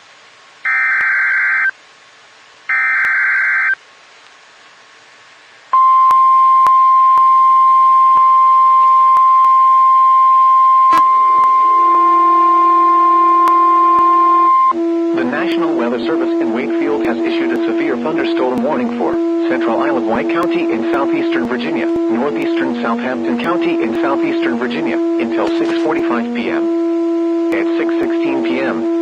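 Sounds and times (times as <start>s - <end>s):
screeching data tones: 0.7s - 1.7s, 2.7s - 3.8s, 10.9s - 26.6s
steady attention tone: 2.7s - 3.8s, 5.8s - 29.0s
lower buzzing tone: 5.7s - 29.0s.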